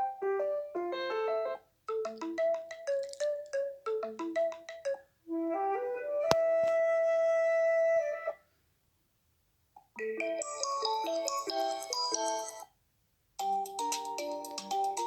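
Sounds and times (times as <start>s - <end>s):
chiming ringtone: 10.0s - 12.6s
flute-like ringtone: 10.0s - 12.6s.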